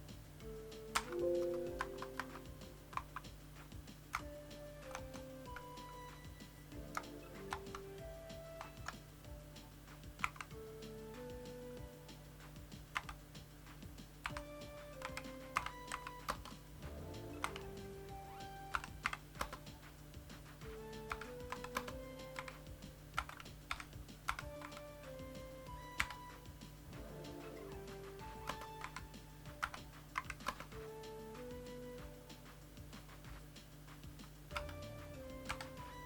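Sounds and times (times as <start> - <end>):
background music: 0.0 - 36.0
keyboard key clicks: 0.9 - 3.3.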